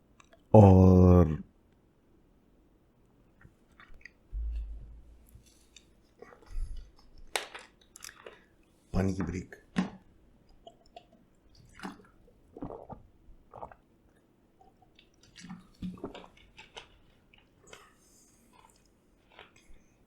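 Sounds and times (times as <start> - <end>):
person gulping water: 3.8 - 5.0, 10.5 - 16.9.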